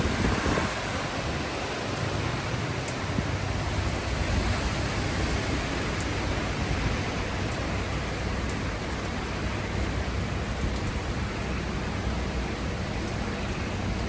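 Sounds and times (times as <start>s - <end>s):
driving rain: 0.0s - 14.0s
hurricane-force wind: 0.0s - 14.0s.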